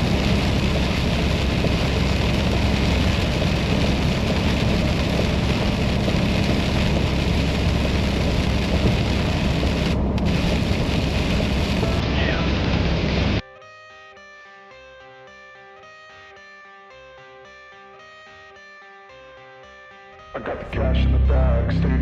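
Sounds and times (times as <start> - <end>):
heavy rain and road spray: 0.0 - 13.4
truck engine and tyres drone: 0.0 - 13.4, 20.4 - 22.0.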